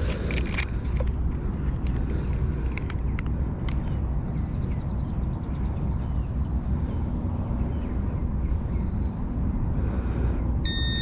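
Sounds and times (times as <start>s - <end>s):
low outdoor rumble: 0.0s - 11.0s.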